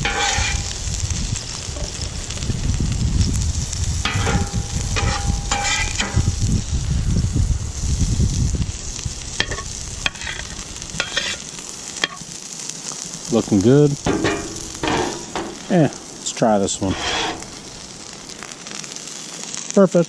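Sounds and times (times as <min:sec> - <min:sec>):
metal spatula scraping griddle: 0:00.0 - 0:00.8, 0:04.0 - 0:06.4, 0:09.4 - 0:12.2, 0:14.1 - 0:18.1
spatula clicking on griddle: 0:00.0 - 0:00.8, 0:09.4 - 0:11.4
low rumble: 0:00.0 - 0:08.7
potatoes sizzling on griddle: 0:00.0 - 0:20.0.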